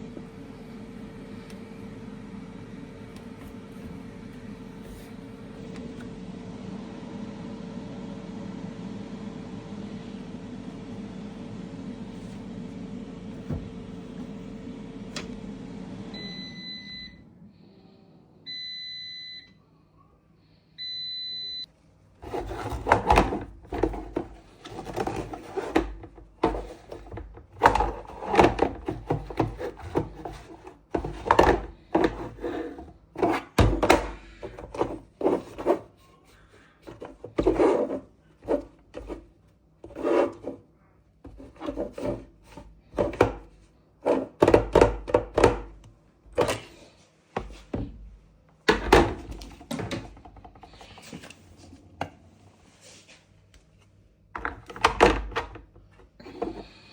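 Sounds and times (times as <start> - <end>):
washing machine humming: 0.0 - 19.6, 20.8 - 56.9.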